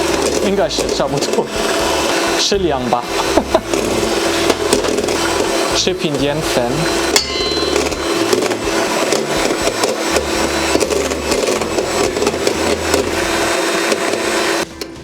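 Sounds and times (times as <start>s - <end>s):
electric hand mixer running: 0.0s - 15.0s.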